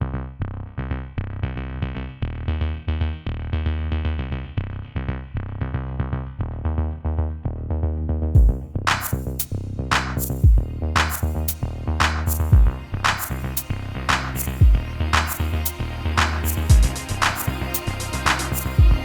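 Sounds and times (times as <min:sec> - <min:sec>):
electronic music: 0:08.4 - 0:19.0.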